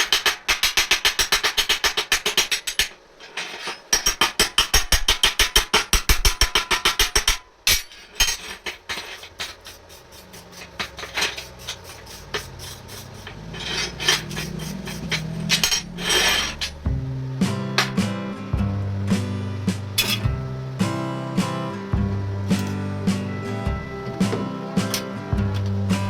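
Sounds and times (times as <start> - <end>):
rapid metal hammering: 0.0 - 26.0
metal parts clinking: 2.4 - 4.4, 7.7 - 16.8, 20.0 - 20.3.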